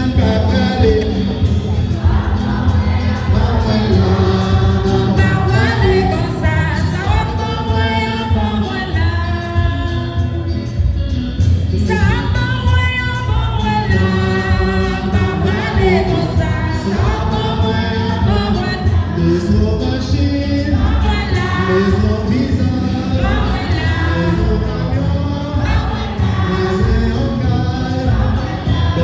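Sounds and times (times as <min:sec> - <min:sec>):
choir singing a hymn: 0:00.0 - 0:09.5, 0:14.0 - 0:29.0
musical accompaniment with bass: 0:00.0 - 0:29.0.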